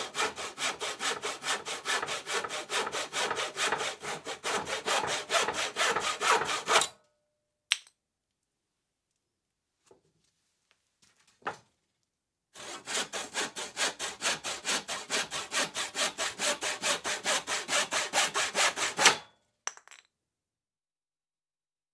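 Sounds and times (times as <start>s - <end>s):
hand saw cutting wood: 0.0s - 6.9s, 12.6s - 19.3s.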